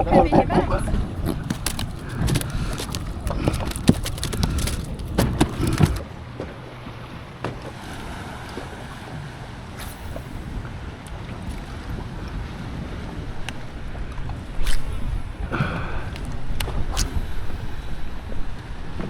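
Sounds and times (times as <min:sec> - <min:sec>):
knocks and clatter on boat: 0:00.0 - 0:07.8
wind and water hiss: 0:06.1 - 0:19.0.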